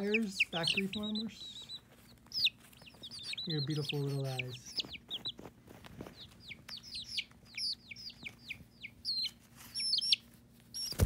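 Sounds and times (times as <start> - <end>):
baby chicks peeping: 0.0 - 11.0.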